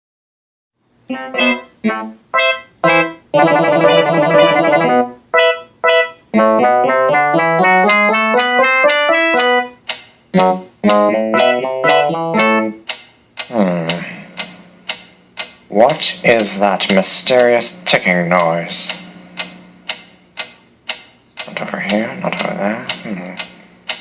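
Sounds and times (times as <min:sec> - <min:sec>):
keyboard music: 0:01.1 - 0:09.8, 0:10.4 - 0:12.9, 0:15.7 - 0:19.8.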